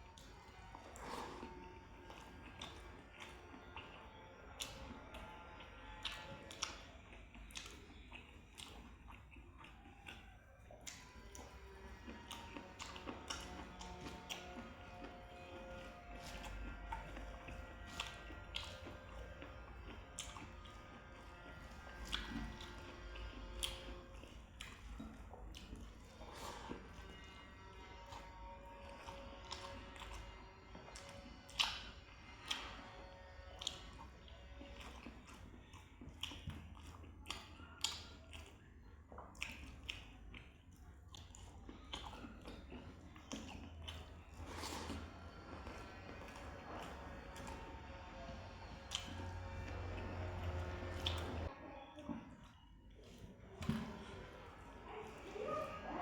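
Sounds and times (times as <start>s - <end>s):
faint background music: 0.0s - 56.0s
person chewing food: 0.0s - 56.0s
mouth smacking and clicking: 4.6s - 14.8s, 21.8s - 27.3s, 33.5s - 51.5s
wet mouth smacks: 22.0s - 26.7s, 34.8s - 45.7s.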